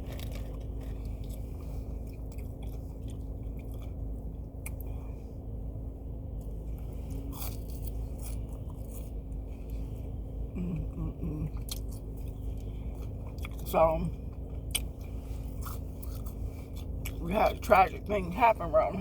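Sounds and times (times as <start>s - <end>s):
chewing crunchy food: 0.0s - 5.0s, 6.4s - 10.0s, 11.4s - 17.2s
steady low hum: 0.0s - 19.0s.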